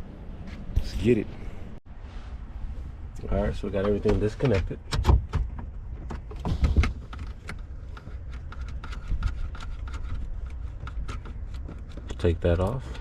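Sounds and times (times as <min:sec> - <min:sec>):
clicks and knocks of tools: 0:03.8 - 0:13.0.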